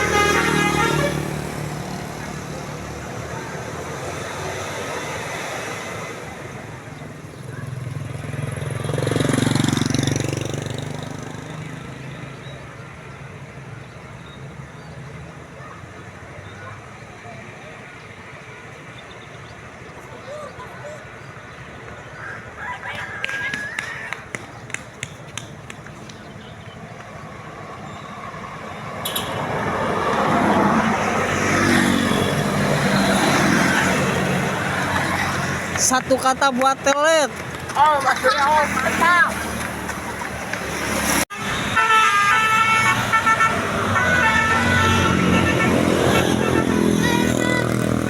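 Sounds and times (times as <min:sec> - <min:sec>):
vehicle passing by: 0:00.0 - 0:13.8, 0:27.0 - 0:48.0
bus engine approaching: 0:00.0 - 0:48.0.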